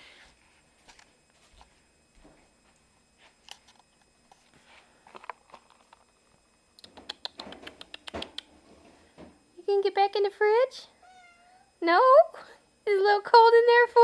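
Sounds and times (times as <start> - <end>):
cat licking and eating: 6.8 - 8.6.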